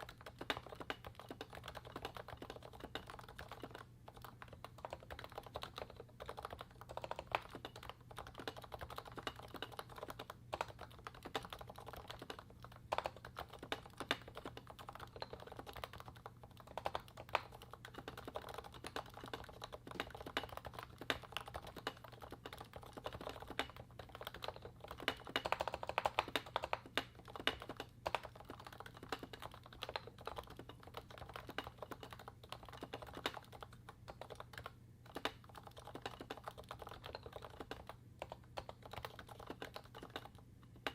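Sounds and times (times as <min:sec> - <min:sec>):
fast typing on keyboard: 0:00.0 - 0:40.9.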